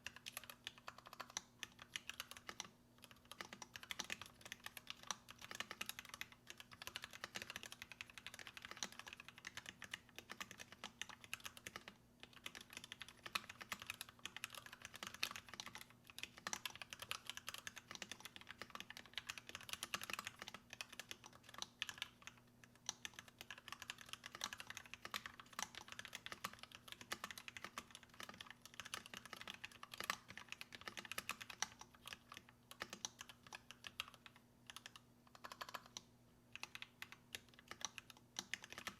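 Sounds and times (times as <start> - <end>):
faint steady hum: 0.0 - 38.9
typing on mechanical keyboard: 0.0 - 38.9.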